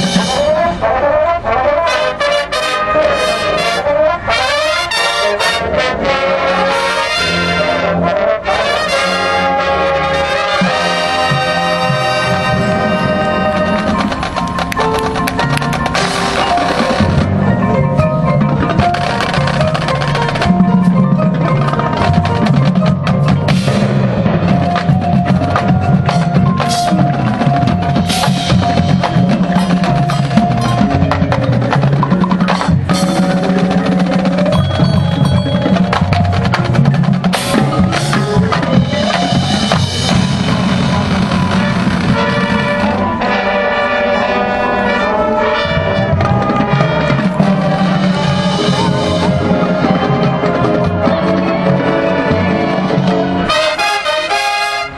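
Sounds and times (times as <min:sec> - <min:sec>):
held low brass notes: 0:00.0 - 0:54.9
chimes and glockenspiel: 0:12.6 - 0:36.8.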